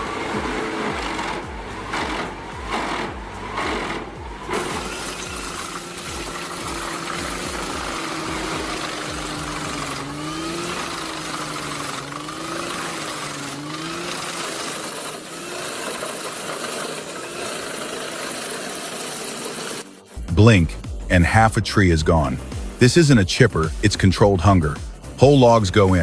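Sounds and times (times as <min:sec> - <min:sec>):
wood cracking in chipper: 0:00.0 - 0:20.0
wood chipper engine running: 0:00.0 - 0:26.0.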